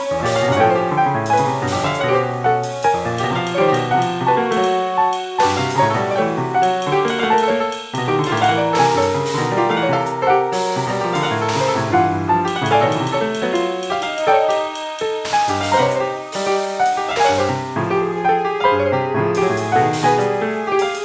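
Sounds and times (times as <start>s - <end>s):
fast free-jazz piano: 0.0s - 21.0s.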